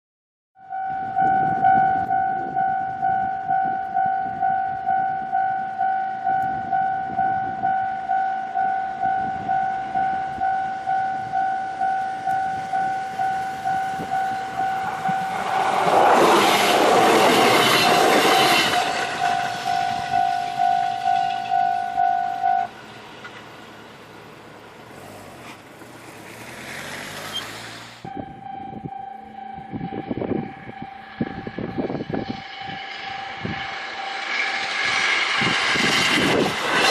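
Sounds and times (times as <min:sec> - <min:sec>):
electric train passing: 0:00.7 - 0:36.9
level crossing bell ringing: 0:01.7 - 0:15.4.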